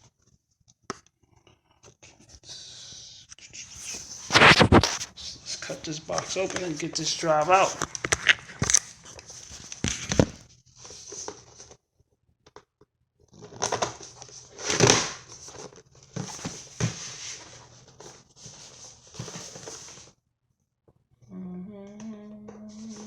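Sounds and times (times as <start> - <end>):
cardboard box being cut: 4.2 - 5.1
packaging tearing and crinkling: 4.2 - 5.1.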